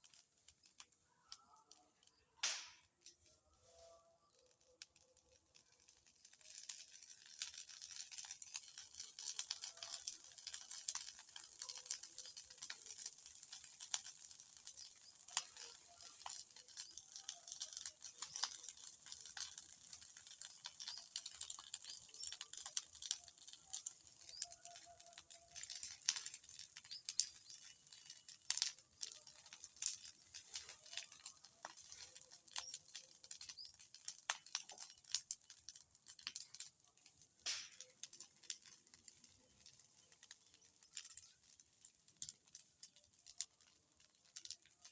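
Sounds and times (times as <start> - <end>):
bonfire crackling and popping: 0.0 - 44.9
fire hissing: 37.5 - 41.3.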